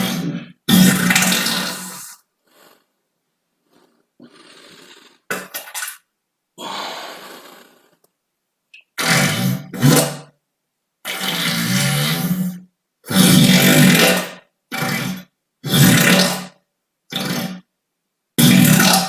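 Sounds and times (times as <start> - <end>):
person farting: 0.0 - 2.2, 3.7 - 6.0.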